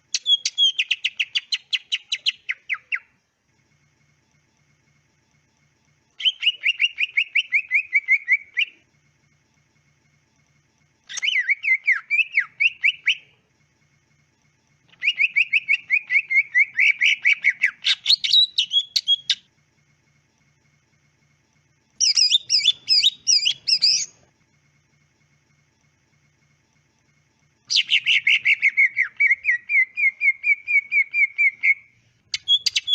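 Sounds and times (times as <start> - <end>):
bird singing whistled notes: 0.1 - 3.1, 6.2 - 8.8, 11.1 - 13.4, 14.9 - 19.5, 22.0 - 24.2, 27.7 - 32.9.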